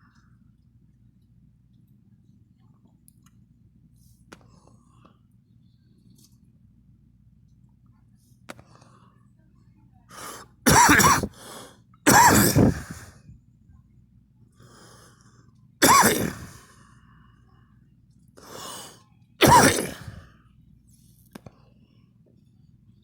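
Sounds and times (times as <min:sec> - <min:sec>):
person coughing: 0:10.2 - 0:11.5, 0:12.1 - 0:13.2, 0:15.8 - 0:16.6, 0:18.4 - 0:20.3.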